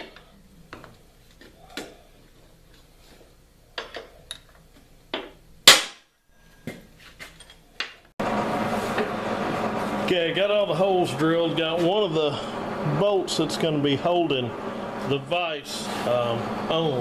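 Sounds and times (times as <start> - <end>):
steady noisy mechanical sound: 8.2 - 17.0.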